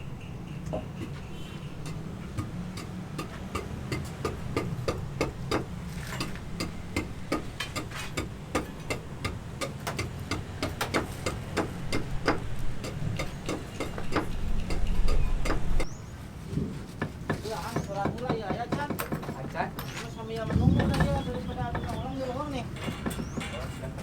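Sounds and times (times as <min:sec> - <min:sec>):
hand hammer knocking: 0:01.0 - 0:15.9, 0:17.0 - 0:19.6, 0:22.8 - 0:24.0.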